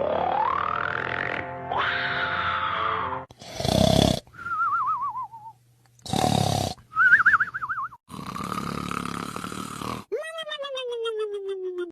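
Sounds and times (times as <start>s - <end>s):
rasping snore: 3.4s - 4.3s, 6.0s - 6.8s, 8.1s - 10.1s.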